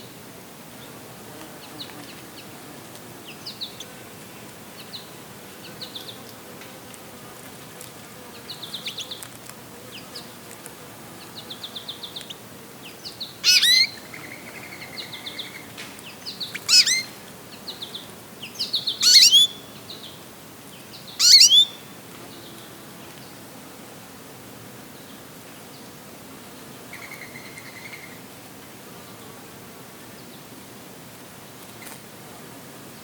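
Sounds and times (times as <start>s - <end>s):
songbirds twittering: 11.2s - 20.2s, 20.8s - 23.4s
loud sharp bird calls: 13.4s - 15.7s, 16.4s - 17.1s, 18.6s - 19.6s, 21.2s - 21.8s.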